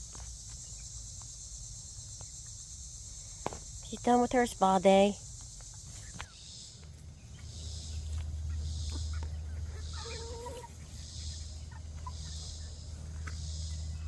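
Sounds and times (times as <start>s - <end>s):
insects droning: 0.0s - 14.0s
chicken call: 8.6s - 12.8s.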